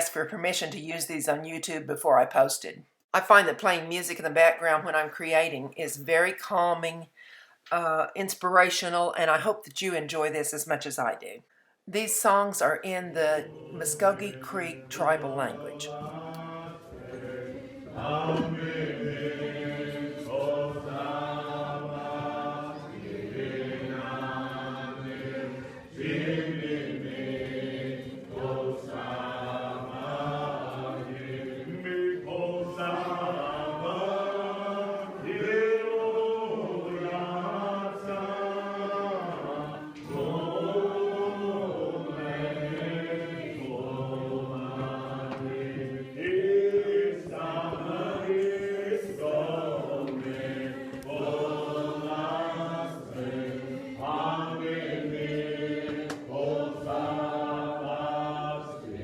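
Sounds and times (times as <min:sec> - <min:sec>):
congregation singing a hymn: 0:12.2 - 0:59.0.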